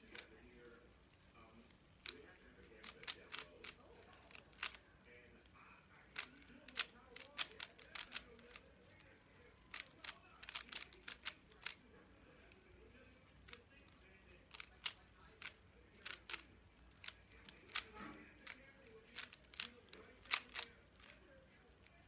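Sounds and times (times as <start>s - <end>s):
puzzle cube clicking: 0.0s - 0.3s, 2.8s - 4.8s, 6.1s - 11.8s, 14.4s - 21.2s.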